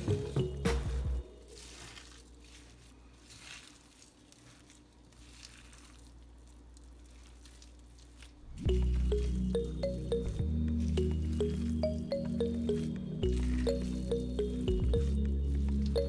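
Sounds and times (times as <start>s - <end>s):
ground meat squishing: 1.2s - 16.0s.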